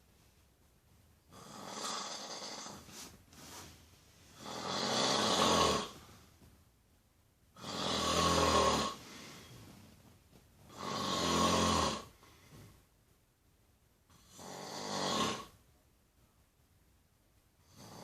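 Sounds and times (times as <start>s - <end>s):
loud snoring: 1.3s - 2.9s, 4.4s - 6.0s, 7.6s - 9.0s, 10.7s - 12.2s, 14.1s - 15.6s, 17.6s - 18.0s
faint breathing: 8.9s - 10.0s.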